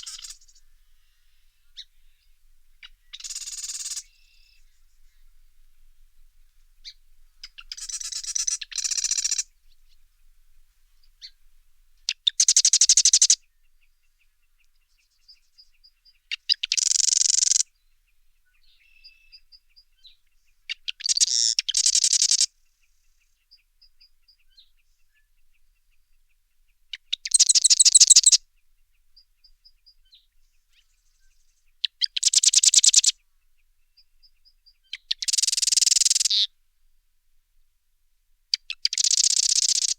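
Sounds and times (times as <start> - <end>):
wren trilling: 0.0 - 0.7, 1.7 - 4.8, 6.8 - 9.5, 12.1 - 13.4, 16.3 - 17.6, 20.8 - 22.5, 27.1 - 28.4, 31.8 - 33.1, 34.8 - 36.5, 38.6 - 39.9.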